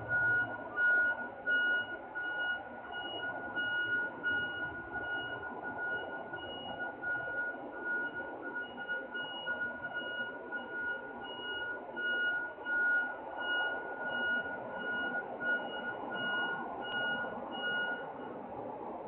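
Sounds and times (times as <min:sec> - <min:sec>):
truck warning alarm beeping: 0:00.0 - 0:18.4
steady background rumble: 0:00.0 - 0:19.0.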